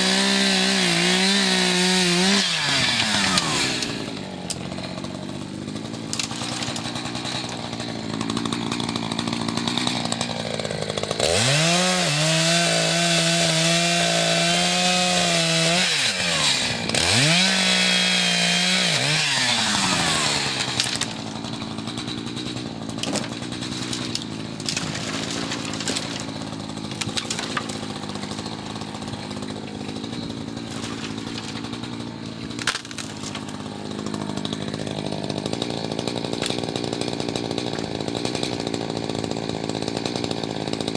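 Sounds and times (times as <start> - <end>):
chainsaw idling and revving: 0.0 - 40.9.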